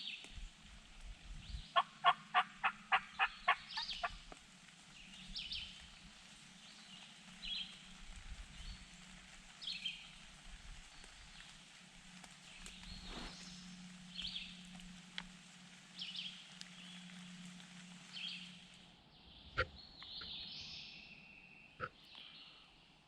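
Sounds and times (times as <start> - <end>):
songbirds chirping: 0.0 - 23.0
wild turkey yelping: 1.8 - 4.4.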